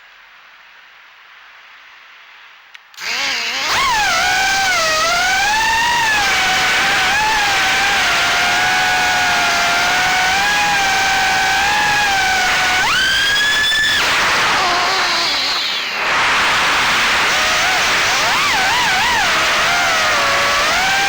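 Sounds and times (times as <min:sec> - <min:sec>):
drone motors whining: 0:03.0 - 0:21.0.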